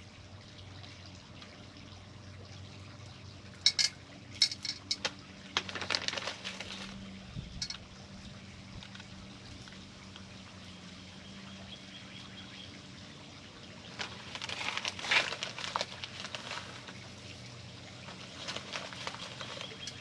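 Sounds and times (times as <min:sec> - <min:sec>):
low steady hum: 0:00.0 - 0:20.0
hands scraping in gritty soil: 0:14.0 - 0:17.1.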